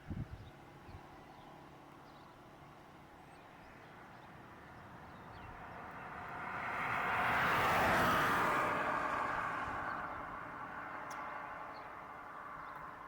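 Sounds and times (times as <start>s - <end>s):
passing vehicle rushing: 5.6s - 11.7s.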